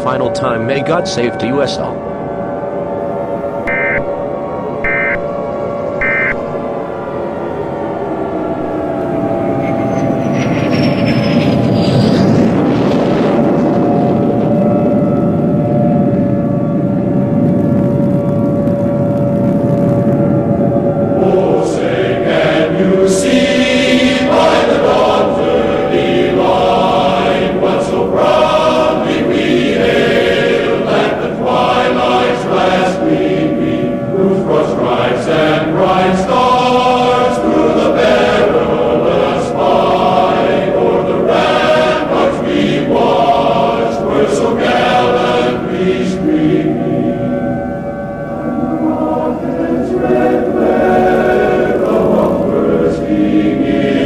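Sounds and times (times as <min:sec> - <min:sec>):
choir singing an anthem: 0:20.6 - 0:54.0.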